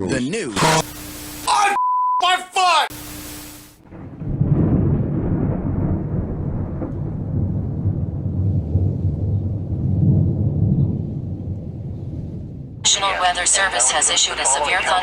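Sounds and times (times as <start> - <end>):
steady hum: 0.6 - 1.8, 2.9 - 3.8, 12.8 - 15.0
hiss: 2.9 - 3.8
low rumbling thunder: 3.8 - 13.2.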